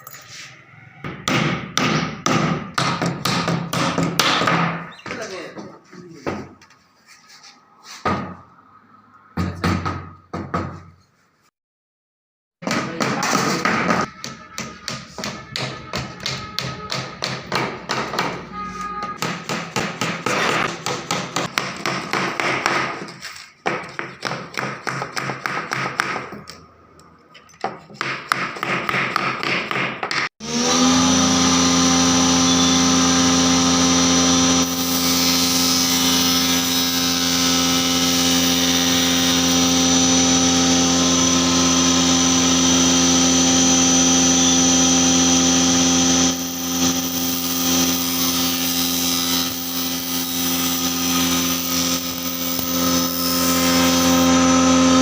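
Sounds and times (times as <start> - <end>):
power tool motor running: 30.4 - 55.0.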